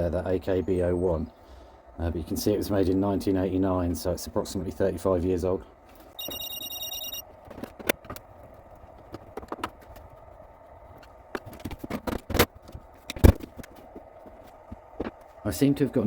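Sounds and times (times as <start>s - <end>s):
high-pitched whine: 6.2s - 7.2s.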